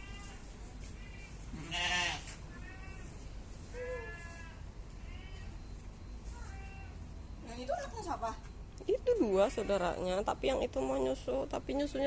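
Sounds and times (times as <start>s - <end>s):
goats bleating: 0.0s - 3.1s, 3.7s - 5.6s.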